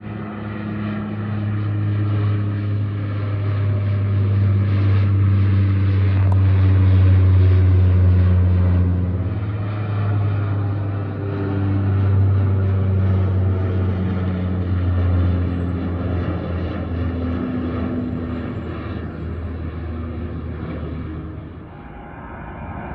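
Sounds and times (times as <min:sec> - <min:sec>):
airliner engines roaring: 0:00.0 - 0:22.9.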